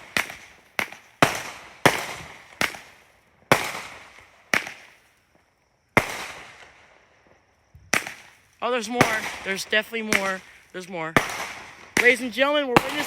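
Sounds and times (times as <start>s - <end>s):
fireworks bangs with echo: 0.0s - 5.1s, 6.0s - 6.9s, 7.8s - 13.0s.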